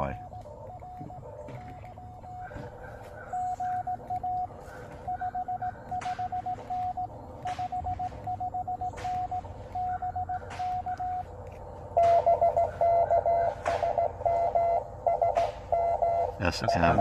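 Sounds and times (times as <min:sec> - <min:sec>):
faint static crackles: 0:00.0 - 0:16.4
morse code tone: 0:00.0 - 0:17.0
radio band hiss: 0:15.4 - 0:17.0.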